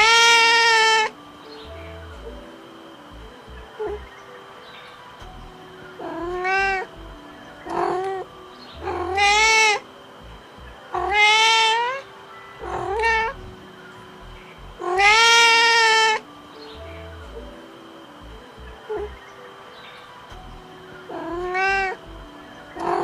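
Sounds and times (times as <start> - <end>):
cat meowing: 0.0 - 1.1, 8.8 - 9.8, 10.9 - 12.0, 12.6 - 13.4, 14.8 - 16.2, 21.1 - 22.0.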